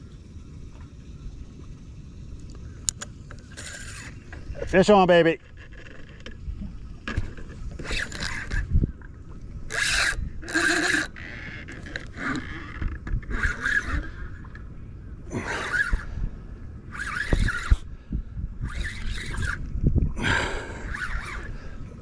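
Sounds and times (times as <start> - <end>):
fishing reel rasping: 3.4 - 4.6, 9.7 - 14.2, 16.9 - 17.8, 18.7 - 19.6, 20.8 - 21.6.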